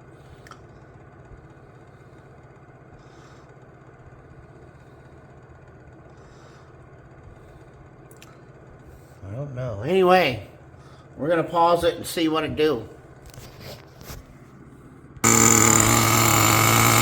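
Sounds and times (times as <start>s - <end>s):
low mechanical hum: 0.0s - 17.0s.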